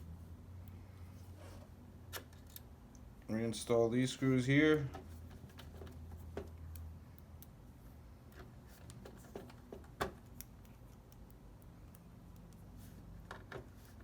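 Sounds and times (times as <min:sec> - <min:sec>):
faint clicks and ticks: 0:04.7 - 0:07.6, 0:09.8 - 0:12.7.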